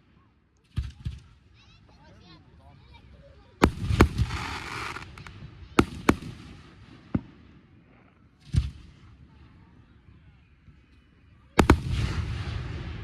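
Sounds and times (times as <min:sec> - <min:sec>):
fireworks crackling: 0:03.6 - 0:07.4
fireworks bangs: 0:03.6 - 0:07.6, 0:11.6 - 0:13.0.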